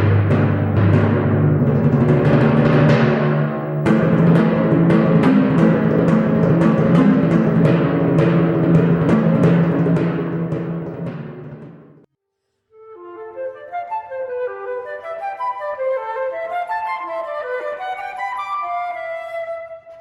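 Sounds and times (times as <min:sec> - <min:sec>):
timpani drum strikes: 0:00.0 - 0:12.1.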